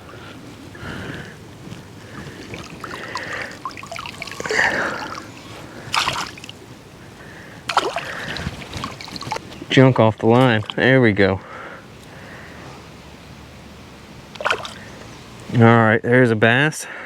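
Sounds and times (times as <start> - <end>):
water splashing and sloshing: 0.0 - 11.2, 14.3 - 15.5.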